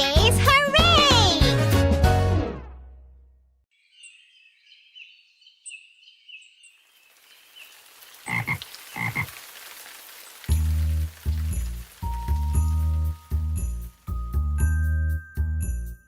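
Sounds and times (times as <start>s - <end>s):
music with steady bass: 0.0s - 2.8s, 11.4s - 16.0s
frogs croaking: 6.6s - 10.6s
faint hiss: 7.0s - 14.1s.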